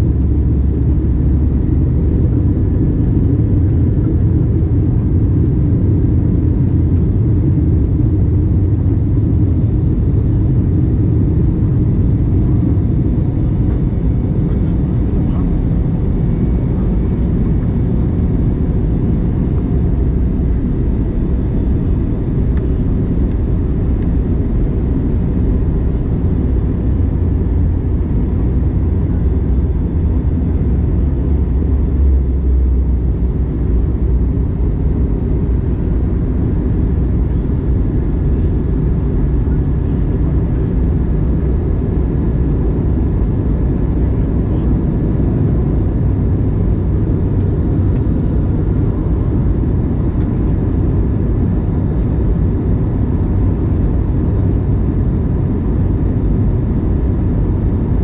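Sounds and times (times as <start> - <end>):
airliner cabin engine rumble: 0.0 - 58.0.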